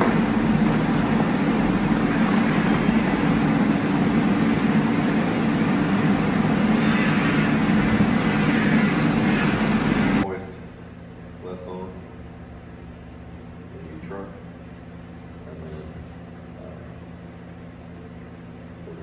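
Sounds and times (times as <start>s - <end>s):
vehicle running: 0.0s - 10.2s.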